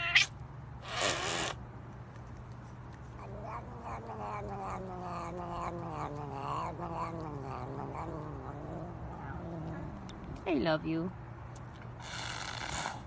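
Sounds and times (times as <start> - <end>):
cat meowing: 0.0 - 0.3, 3.2 - 10.2
cat yowling: 0.0 - 0.3, 3.2 - 10.2.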